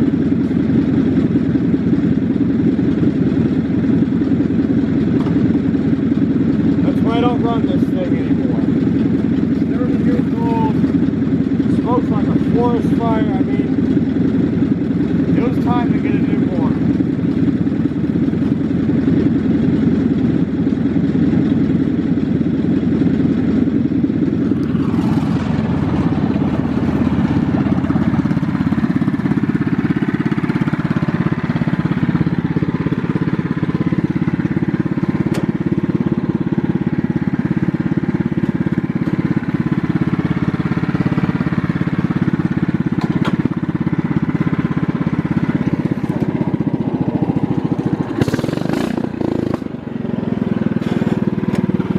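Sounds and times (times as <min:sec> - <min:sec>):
lawn mower engine running: 0:00.0 - 0:51.9.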